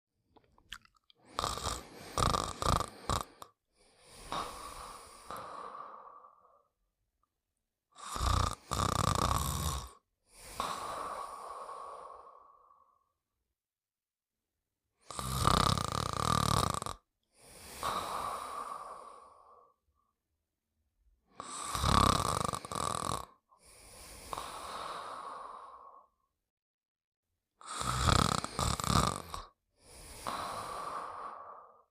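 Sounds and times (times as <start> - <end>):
loud snores: 1.2 - 6.7, 8.0 - 13.0, 15.0 - 19.8, 21.3 - 26.2, 27.6 - 31.9
soft breath: 1.3 - 6.8, 10.3 - 13.1, 17.4 - 19.8, 23.6 - 26.3, 29.8 - 31.9.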